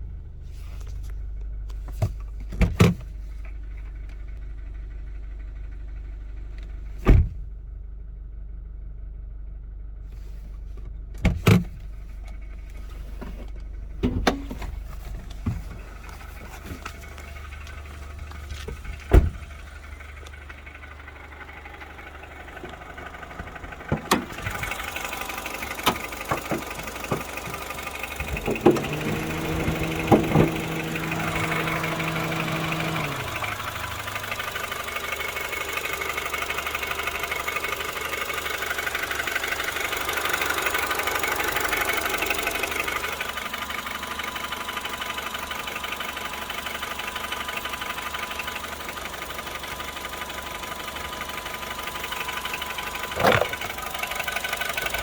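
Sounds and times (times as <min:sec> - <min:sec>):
car engine humming: 0:00.0 - 0:08.1, 0:08.9 - 0:55.0
engine ticking clicks: 0:00.8 - 0:07.2, 0:10.6 - 0:55.0
second steady hum: 0:11.8 - 0:34.9.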